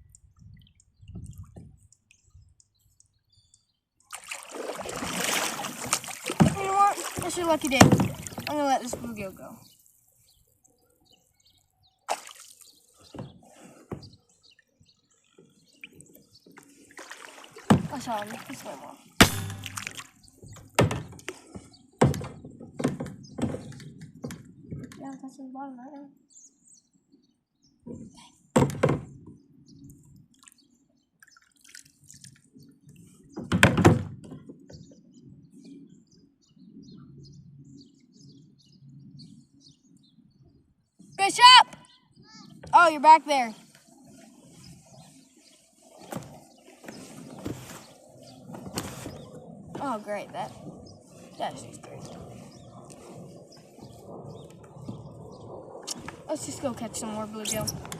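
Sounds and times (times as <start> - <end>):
water dripping: 4.0 - 10.8, 15.8 - 20.3
fish splashing into water: 4.1 - 8.5, 12.1 - 12.6, 16.9 - 20.2
loud thumps: 19.2 - 20.0.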